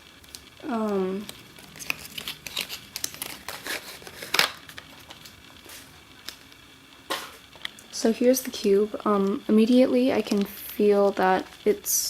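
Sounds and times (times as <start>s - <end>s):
plastic packaging crinkling: 0.0s - 11.9s.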